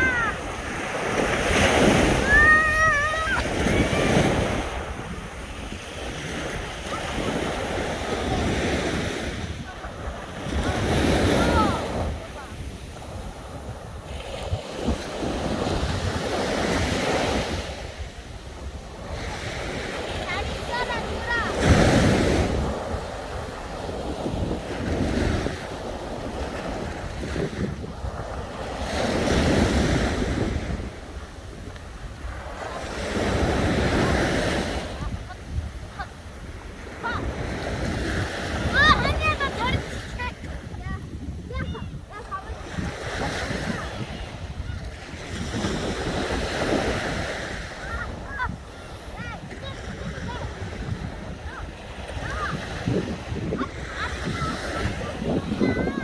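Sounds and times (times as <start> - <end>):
sea waves washing onto shore: 0.0 - 56.0
wind buffeting microphone: 0.0 - 56.0.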